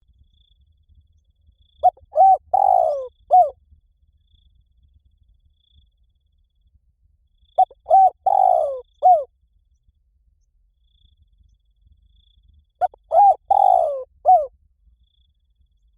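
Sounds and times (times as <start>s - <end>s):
dove cooing: 1.8s - 3.5s, 7.6s - 9.3s, 12.8s - 14.5s.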